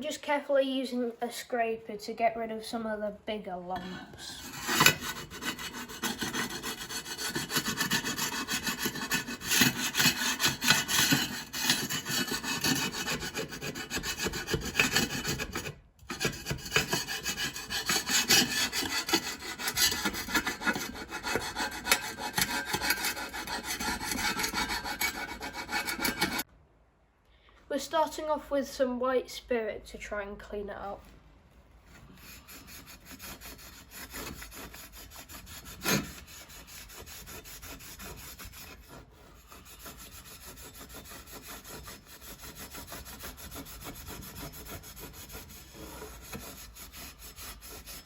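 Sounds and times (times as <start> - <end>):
hand scraper rasping on metal: 4.3 - 26.5, 32.1 - 48.0.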